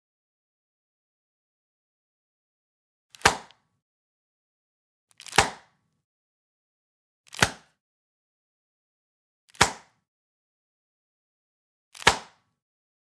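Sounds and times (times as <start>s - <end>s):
sharp plastic pops: 3.1s - 3.6s, 5.2s - 5.8s, 7.3s - 7.7s, 9.5s - 10.0s, 12.0s - 12.5s.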